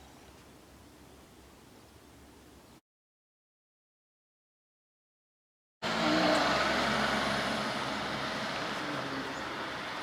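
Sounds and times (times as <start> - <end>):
motor vehicle passing: 5.8 - 10.0.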